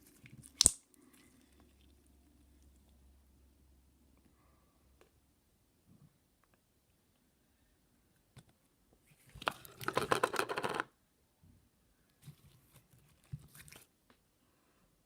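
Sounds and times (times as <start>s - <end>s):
slime crackling and popping: 0.1s - 0.8s.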